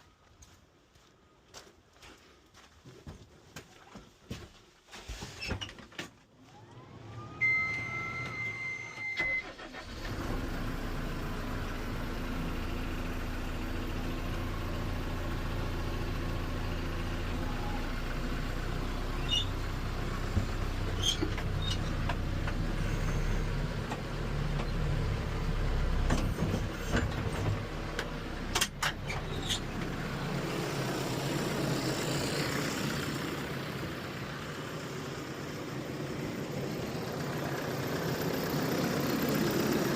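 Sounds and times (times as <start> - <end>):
diesel engine cranking: 6.6 - 34.8
diesel engine running: 6.6 - 39.9
steady high beep: 7.4 - 9.4.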